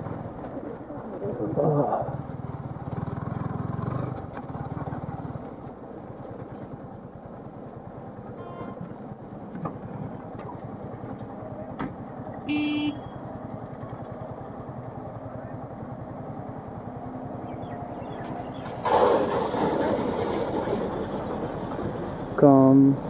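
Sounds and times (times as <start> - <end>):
motorcycle engine running: 0.0 - 20.0
horn blast: 12.5 - 13.0.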